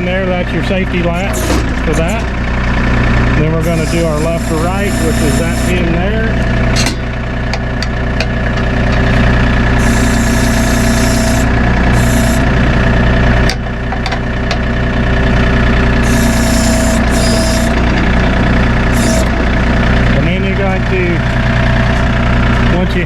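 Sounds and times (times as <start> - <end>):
tractor diesel engine running: 0.0 - 23.0
hydraulic hiss: 1.1 - 2.2, 3.6 - 5.9, 9.8 - 12.5, 16.0 - 19.5.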